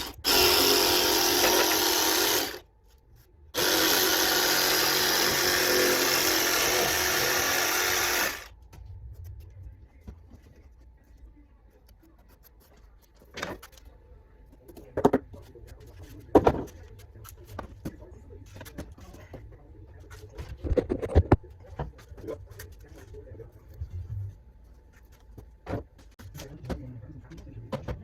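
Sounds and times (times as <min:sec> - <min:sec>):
jigsaw cutting board: 0:00.0 - 0:02.6, 0:03.6 - 0:08.5.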